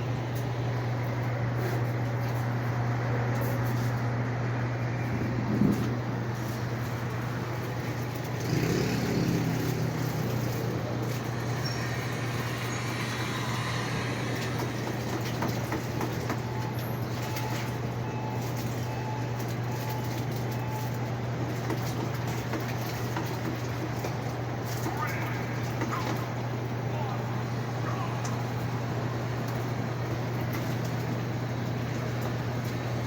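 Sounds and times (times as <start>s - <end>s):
low motor hum: 0.0s - 20.0s
washing machine churning: 0.0s - 33.0s.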